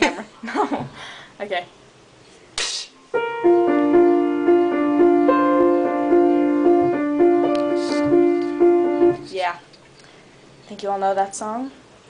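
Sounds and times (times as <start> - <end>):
short hiss: 2.6 - 3.0
piano playing repeated notes: 3.1 - 9.3.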